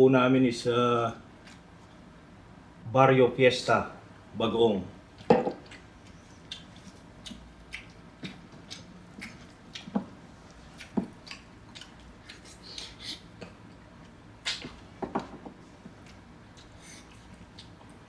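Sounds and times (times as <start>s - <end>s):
chewing with wet smacks: 1.4s - 2.0s, 5.6s - 15.0s, 15.8s - 18.0s
small clicks while eating: 5.6s - 14.7s.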